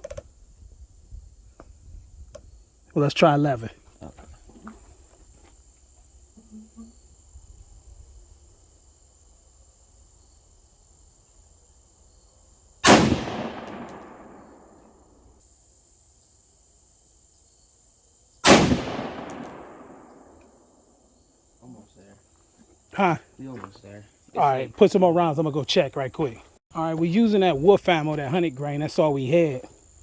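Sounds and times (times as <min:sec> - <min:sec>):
rifle shots with echo: 0:12.8 - 0:15.0, 0:18.4 - 0:20.6.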